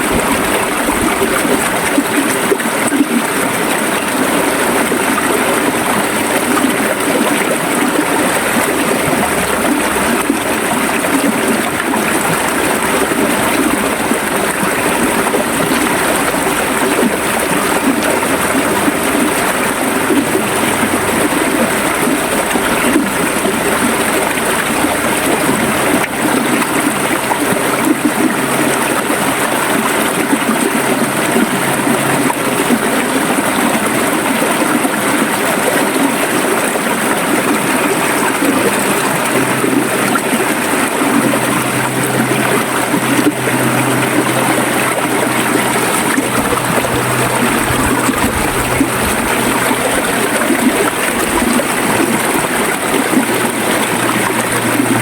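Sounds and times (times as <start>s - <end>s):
river water flowing over rocks: 0.0s - 55.0s.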